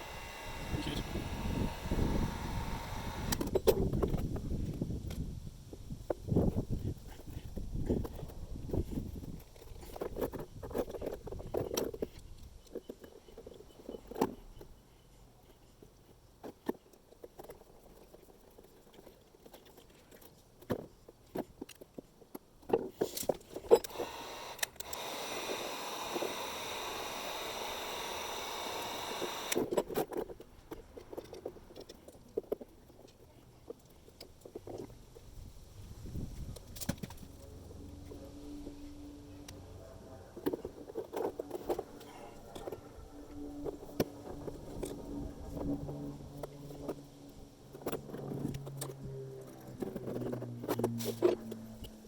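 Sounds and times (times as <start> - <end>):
steady noise: 0.0 - 3.5.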